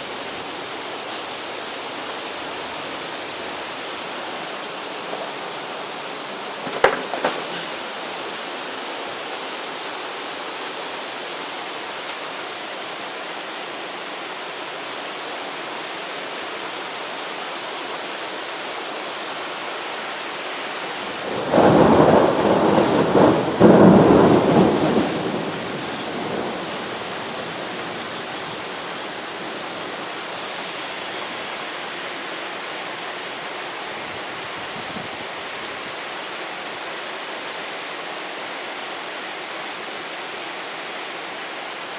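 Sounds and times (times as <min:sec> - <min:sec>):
rain hissing: 0:00.0 - 0:41.9
thunderclap with rolling rumble: 0:06.5 - 0:07.8, 0:21.1 - 0:28.8.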